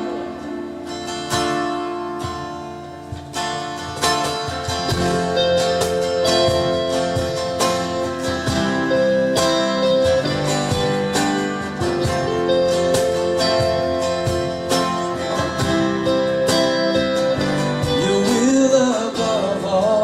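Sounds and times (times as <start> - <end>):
held melody notes: 0.0 - 20.0
strummed guitar chords: 0.0 - 20.0.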